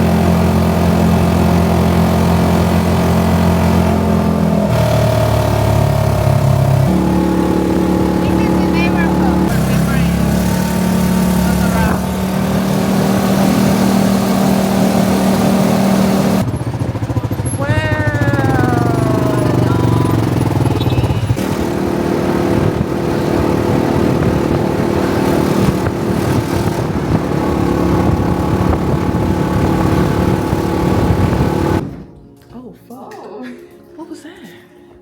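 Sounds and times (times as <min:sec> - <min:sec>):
small vehicle engine running: 0:00.0 - 0:32.0
falling tone: 0:17.6 - 0:22.0.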